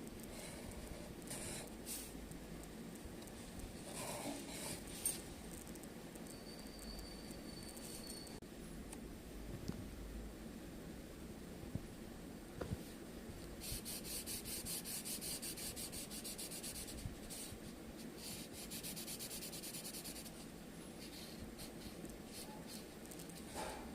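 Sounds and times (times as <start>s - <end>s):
drawing tool scratching paper: 13.6s - 17.5s, 18.2s - 20.4s.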